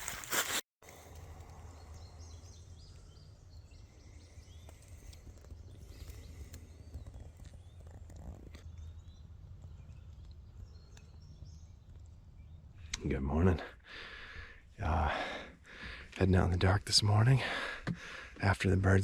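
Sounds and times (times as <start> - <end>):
birds chirping and whistling: 1.0 - 12.8.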